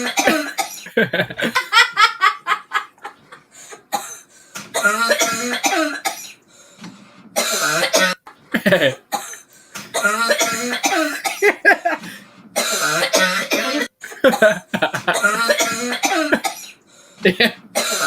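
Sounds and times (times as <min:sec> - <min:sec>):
person coughing and choking: 0:00.0 - 0:01.6, 0:03.9 - 0:06.4, 0:07.4 - 0:12.0, 0:12.6 - 0:18.0.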